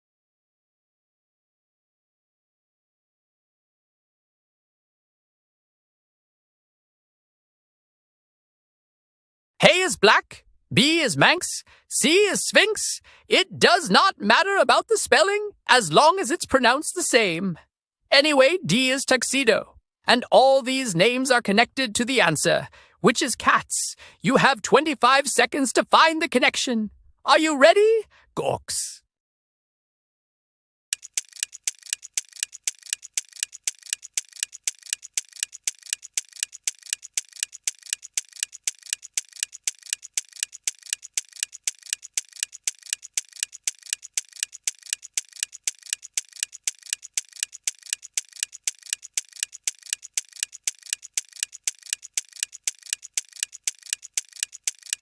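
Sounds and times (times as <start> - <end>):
timer ticking: 31.0 - 55.0.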